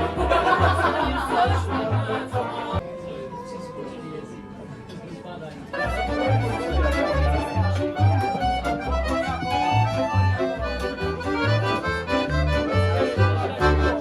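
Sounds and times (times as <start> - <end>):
music with repeating bass: 8.1 - 14.0.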